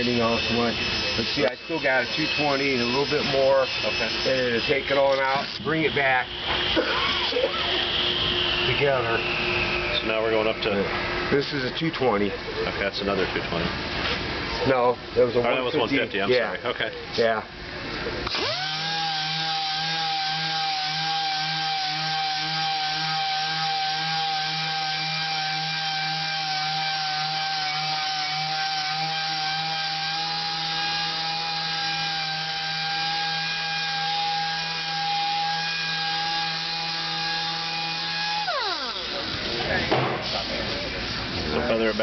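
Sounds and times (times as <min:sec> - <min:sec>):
orbital sander whining: 0:00.0 - 0:11.6, 0:18.2 - 0:39.9.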